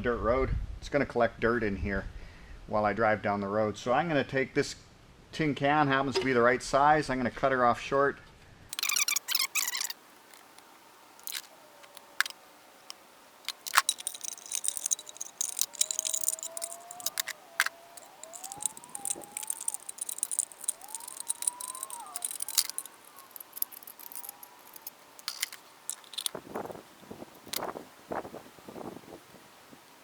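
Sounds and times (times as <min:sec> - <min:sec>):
snipping metal clicks: 0:08.7 - 0:12.4, 0:13.5 - 0:26.7
squeaky sliding tones: 0:08.7 - 0:26.7
metal scraping: 0:08.7 - 0:27.7.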